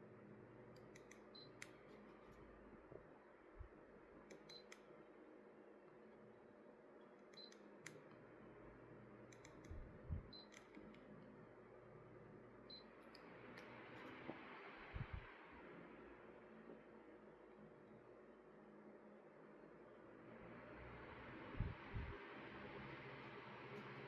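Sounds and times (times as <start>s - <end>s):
electric fan humming: 0.0s - 24.0s
soft clicks: 0.7s - 2.4s, 4.2s - 4.9s, 7.1s - 8.2s, 9.3s - 11.2s.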